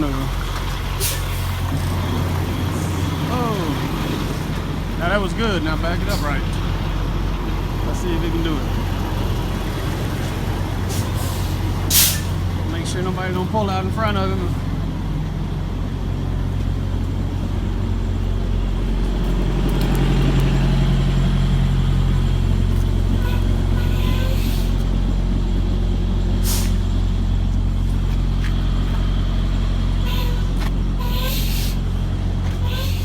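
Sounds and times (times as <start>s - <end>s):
diesel truck engine running: 0.0s - 33.0s
short air hisses: 10.9s - 12.4s, 26.4s - 26.8s, 31.1s - 31.8s.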